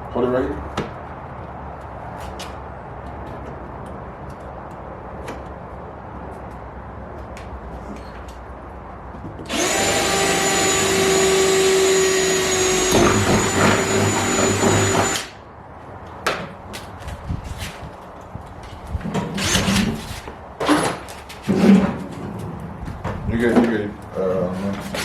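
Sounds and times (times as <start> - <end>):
power drill drilling: 9.5 - 15.3.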